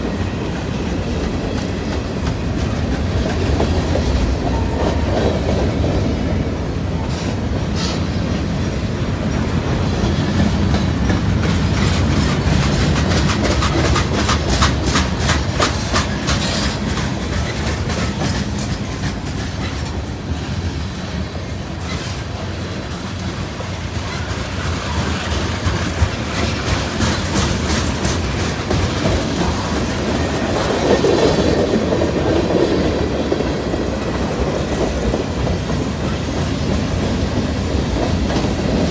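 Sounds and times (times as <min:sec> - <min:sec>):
freight train rumbling past: 0:00.0 - 0:38.9
wheels clacking over rail joints: 0:00.0 - 0:38.9.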